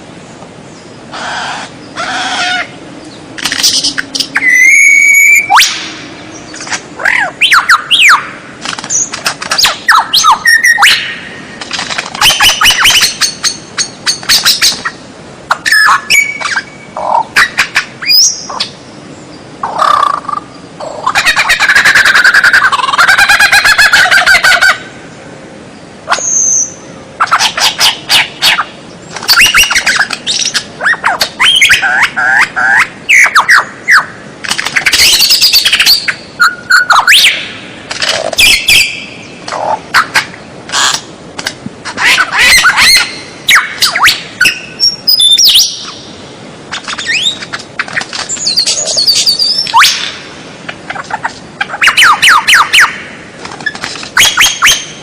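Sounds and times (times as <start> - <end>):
songbird singing varied song: 0.2 - 11.6, 12.2 - 24.4, 38.4 - 40.9, 42.0 - 46.2, 46.8 - 47.6, 48.3 - 50.3.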